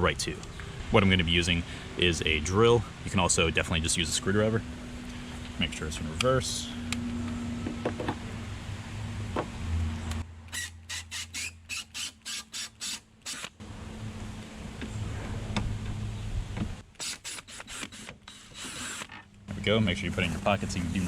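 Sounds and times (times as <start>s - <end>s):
sharp squeaks or clicks: 10.1s - 13.5s
power drill motor hum: 10.5s - 13.6s, 17.0s - 19.3s.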